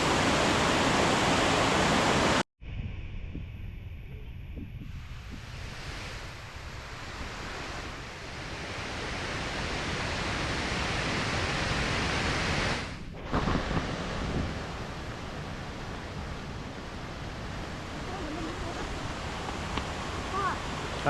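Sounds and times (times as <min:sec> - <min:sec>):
waterfall rushing: 0:00.0 - 0:02.4, 0:07.3 - 0:21.0.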